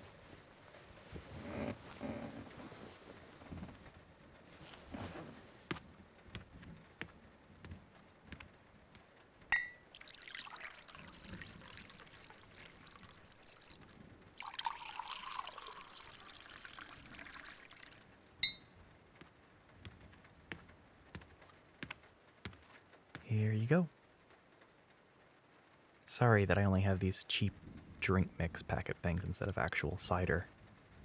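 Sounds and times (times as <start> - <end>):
mug clinking: 9.6 - 13.8, 14.4 - 18.7
liquid pouring into mug: 9.8 - 18.0.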